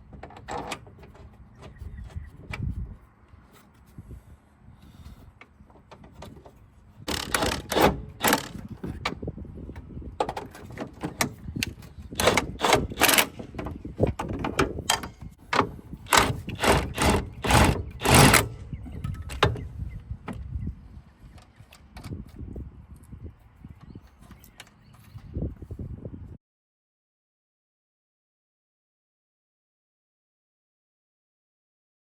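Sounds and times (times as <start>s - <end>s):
hand tools clanking and ratcheting: 0.0s - 2.6s, 4.8s - 19.7s.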